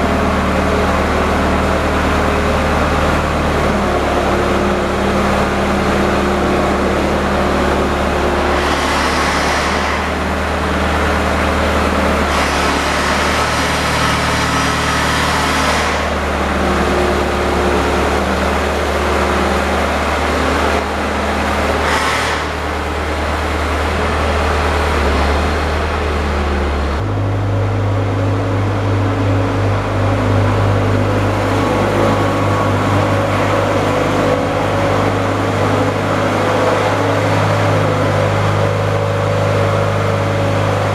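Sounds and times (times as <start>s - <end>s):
riding mower engine running: 0.0s - 40.9s.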